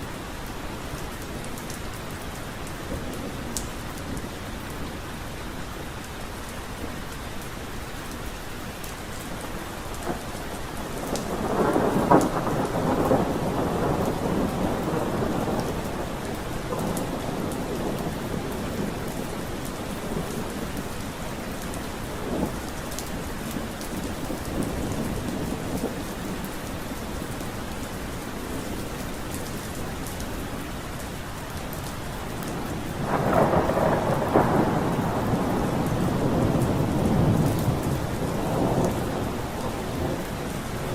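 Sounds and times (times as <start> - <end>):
steady rain falling: 0.0 - 40.9
thunder rumbling: 10.0 - 27.5, 32.3 - 40.9.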